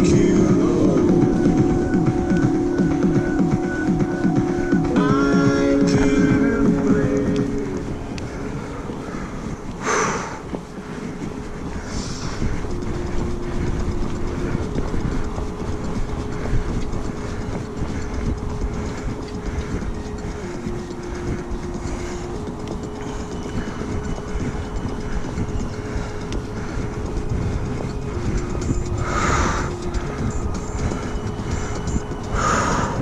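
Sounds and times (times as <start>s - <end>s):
faint steady whine: 0.0s - 33.0s
mountain bike rumbling and rattling: 0.0s - 33.0s
wind buffeting microphone: 0.0s - 33.0s.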